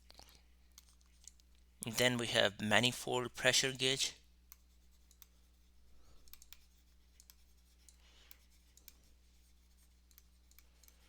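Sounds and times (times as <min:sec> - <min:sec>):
low electrical hum: 0:00.0 - 0:11.0
faint clicks at a desk: 0:04.5 - 0:05.4, 0:06.2 - 0:09.1, 0:09.8 - 0:11.0.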